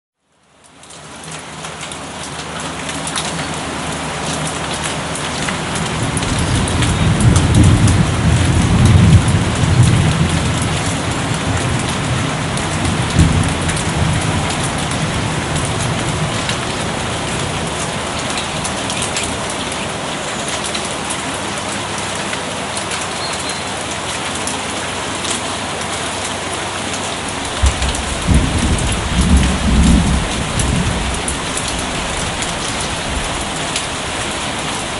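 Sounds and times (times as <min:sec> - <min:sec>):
steady rain falling: 0:00.2 - 0:34.9
distant thunder rumbling: 0:05.8 - 0:19.7, 0:27.4 - 0:34.9.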